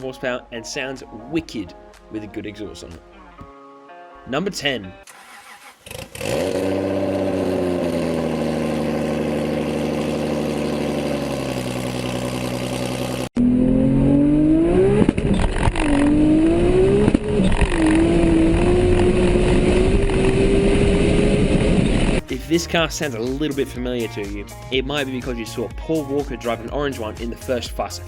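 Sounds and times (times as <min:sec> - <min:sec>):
car engine accelerating through gears: 0:05.1 - 0:22.3.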